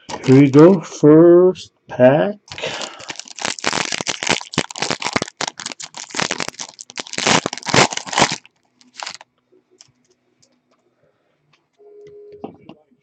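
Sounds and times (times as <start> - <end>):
wrapper tearing and crinkling: 0.0 - 0.6, 2.5 - 9.2.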